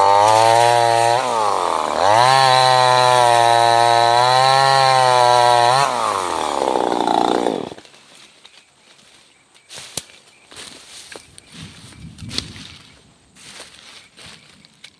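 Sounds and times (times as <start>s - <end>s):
chainsaw running at high revs: 0.0s - 7.8s.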